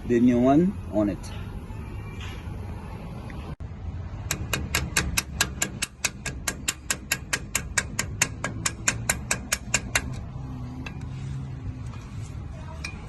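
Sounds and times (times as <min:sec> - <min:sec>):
hand tool clicking on metal: 0:04.3 - 0:11.1.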